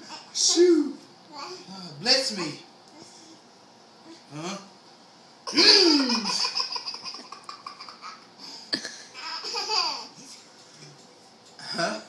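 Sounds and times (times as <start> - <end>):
baby laughing: 5.5 - 8.3, 9.1 - 10.2.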